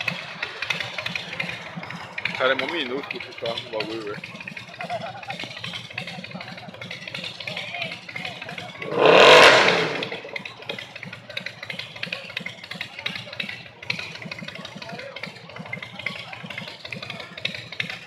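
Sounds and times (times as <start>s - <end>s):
engines idling with low pulses: 0.0s - 18.0s
engine noise burst: 8.8s - 10.7s.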